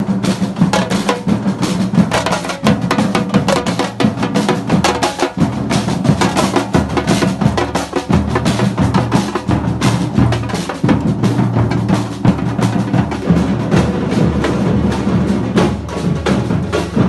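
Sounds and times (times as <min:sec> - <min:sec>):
deep bass drums: 0:00.0 - 0:17.0
percussion band playing fast rhythm: 0:00.0 - 0:17.0.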